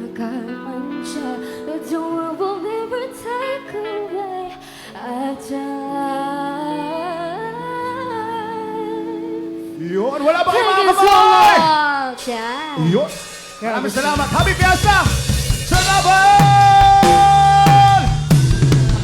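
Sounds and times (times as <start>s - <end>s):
live reggae band music: 7.4s - 19.0s.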